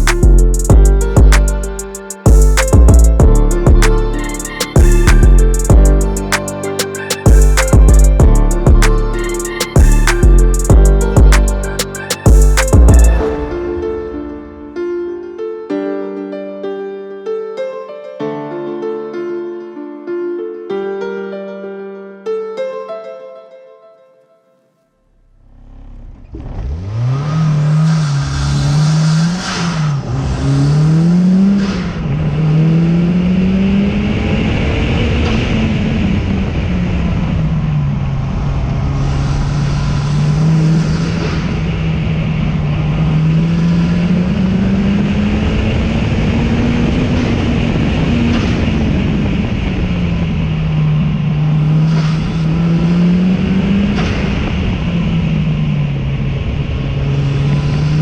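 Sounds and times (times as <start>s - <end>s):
race car engine accelerating: 25.4s - 58.0s
wind and road noise: 25.8s - 58.0s.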